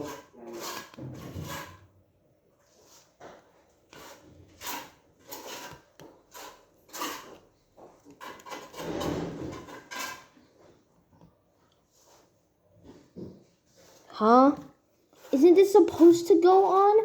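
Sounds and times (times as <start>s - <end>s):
plastic parts scraping and clicking: 3.9s - 10.4s.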